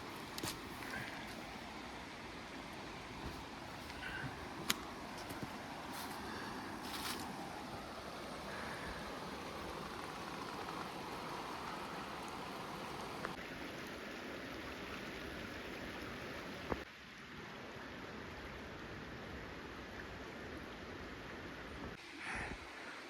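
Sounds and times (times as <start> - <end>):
river flowing over rocks: 0.0 - 16.8.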